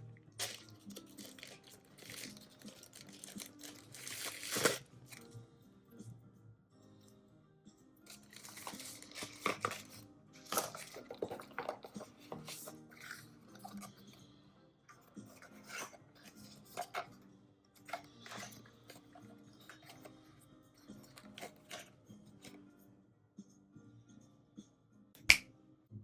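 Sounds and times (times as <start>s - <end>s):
soft background music: 0.0s - 26.0s
packaging rustling: 0.4s - 5.2s, 8.1s - 13.9s.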